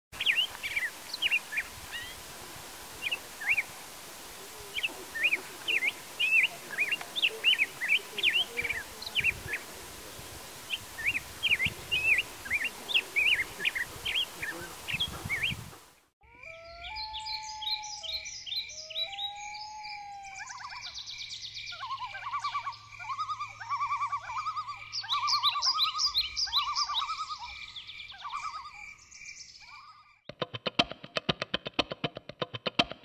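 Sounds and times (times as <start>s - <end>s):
birds chirping: 0.2s - 2.3s, 3.0s - 30.2s
steady background hiss: 0.2s - 16.1s.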